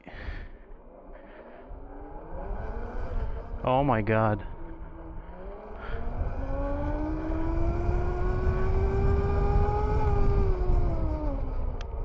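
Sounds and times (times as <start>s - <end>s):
wind rumble on microphone: 1.6s - 12.0s
electric motor whining: 4.6s - 12.0s.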